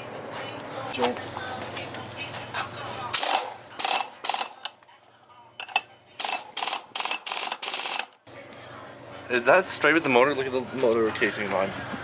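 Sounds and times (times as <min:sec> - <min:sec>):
ratchet wrench strokes: 0:06.2 - 0:08.2.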